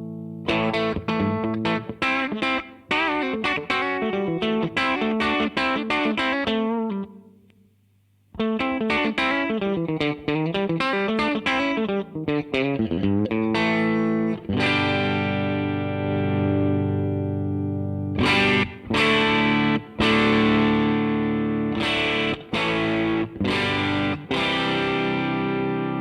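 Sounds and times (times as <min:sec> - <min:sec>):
guitar chord ringing: 0:08.4 - 0:26.0.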